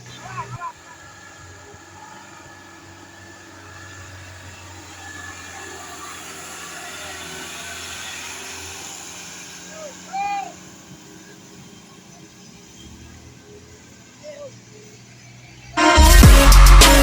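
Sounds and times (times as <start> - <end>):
bus engine rumbling: 0.0 - 17.0
road noise: 0.0 - 17.0.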